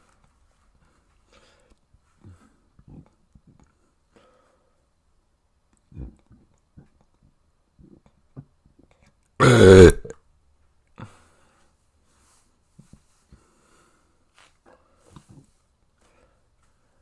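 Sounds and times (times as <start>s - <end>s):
person belching: 9.4s - 10.1s.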